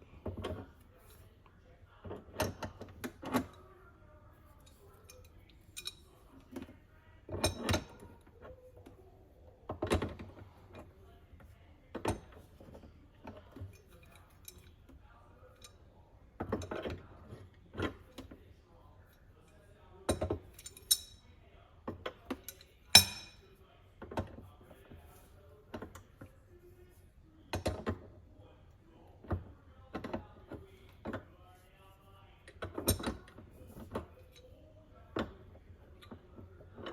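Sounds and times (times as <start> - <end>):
wrench clinking on metal fitting: 4.6 - 6.1, 20.1 - 21.2, 22.4 - 23.4.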